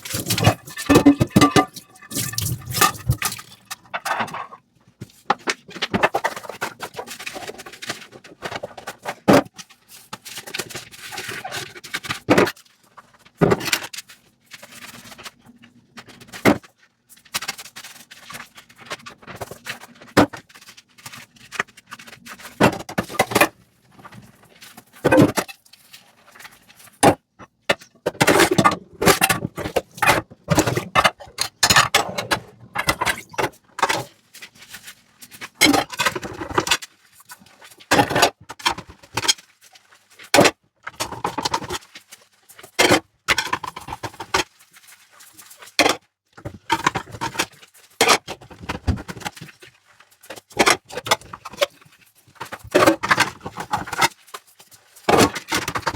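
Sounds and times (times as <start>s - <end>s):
running water: 0.0s - 3.9s
scrubbing: 0.0s - 3.9s
dishes and cutlery clinking in sink: 0.0s - 8.6s, 26.4s - 34.8s.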